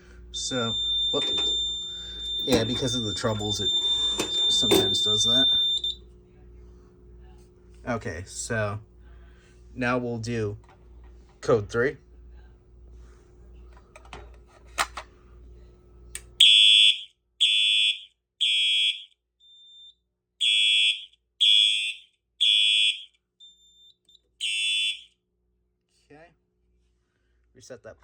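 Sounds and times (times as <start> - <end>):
fire alarm horn blasts: 0.4 - 6.0, 16.4 - 25.1.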